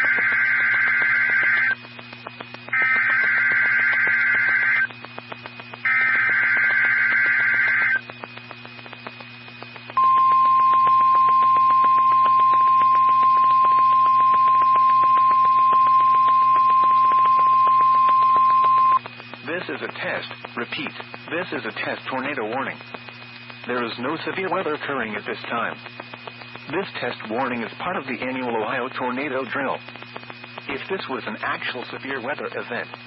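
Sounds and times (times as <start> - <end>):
screeching digital data tones: 0.0 - 1.8, 2.7 - 4.9, 5.8 - 8.0, 10.0 - 19.0
steady warning alarm tone: 0.0 - 1.8, 2.7 - 4.9, 5.8 - 8.0, 10.0 - 19.0
receiver hum and hiss: 0.0 - 33.0.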